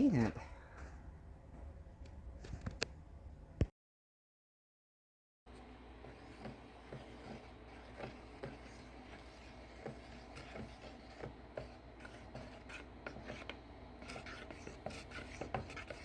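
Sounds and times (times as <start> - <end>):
paintbrush scraping on wall: 5.6 - 16.0.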